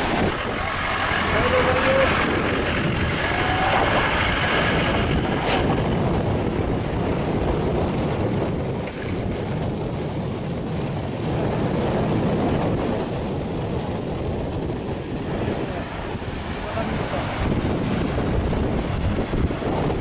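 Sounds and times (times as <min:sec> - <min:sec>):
stream rushing: 0:00.0 - 0:05.8, 0:15.2 - 0:20.0.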